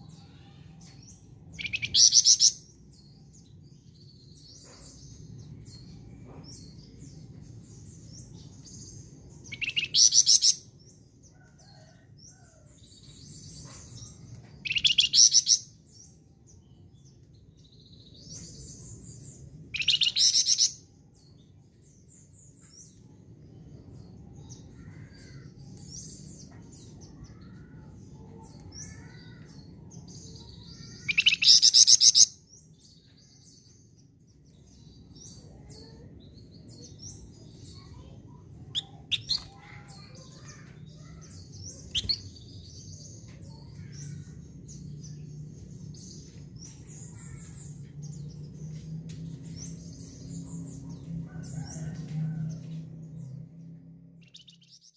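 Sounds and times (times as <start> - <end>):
soft bird chirps: 0.0 - 10.6, 11.3 - 15.6, 16.6 - 23.2, 24.6 - 44.4, 54.2 - 54.9
songbird trilling: 1.6 - 2.6, 9.5 - 10.6, 14.6 - 15.6, 19.7 - 20.8, 30.7 - 32.3, 37.8 - 41.1, 41.7 - 42.3.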